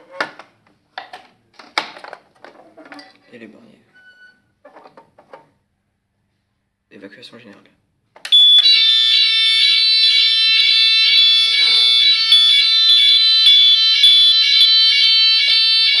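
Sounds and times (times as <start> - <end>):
fire alarm shrill tone: 8.3 - 16.0.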